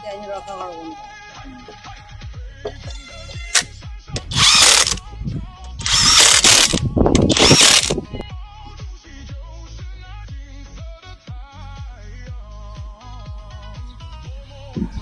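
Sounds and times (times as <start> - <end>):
background music: 0.0 - 15.0
power tool running: 3.6 - 5.0, 5.8 - 8.0
sharp click: 3.6 - 5.0, 5.7 - 8.0.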